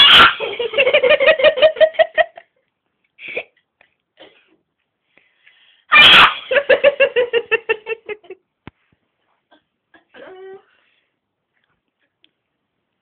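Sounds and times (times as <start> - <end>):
person sneezing loudly: 5.9 - 6.5.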